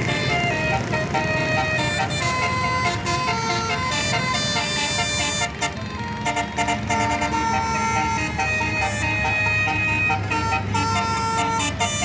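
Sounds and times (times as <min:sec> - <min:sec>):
low engine rumble: 0:00.0 - 0:12.0
multi-tone bus horn tune: 0:00.0 - 0:12.0.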